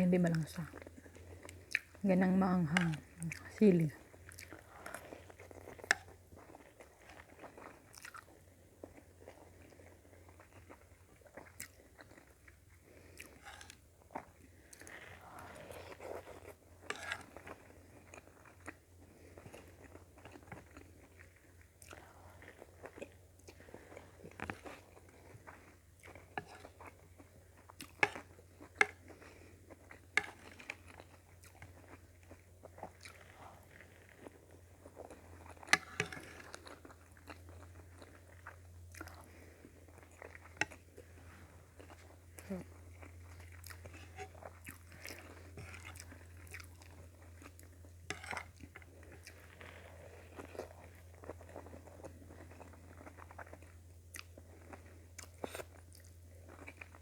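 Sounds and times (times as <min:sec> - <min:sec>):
person chewing food: 0:00.1 - 0:57.0.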